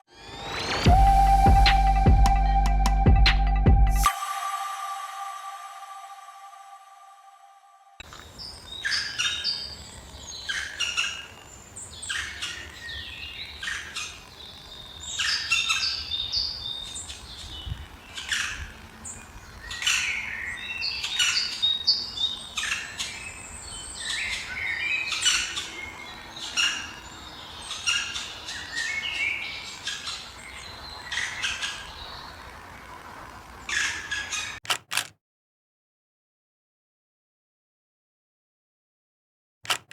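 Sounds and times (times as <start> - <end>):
birds chirping: 5.3 - 34.6.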